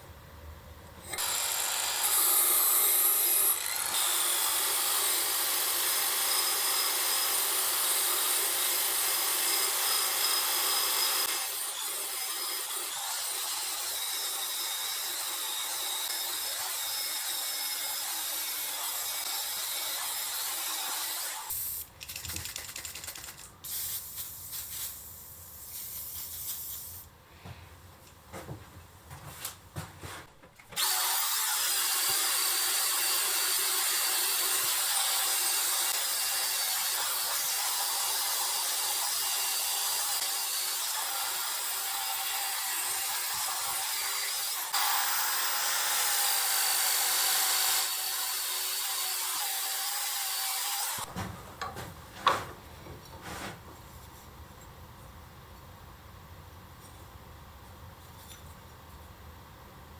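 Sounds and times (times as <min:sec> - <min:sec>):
power drill grinding steel: 0:01.0 - 0:21.6, 0:30.8 - 0:51.1.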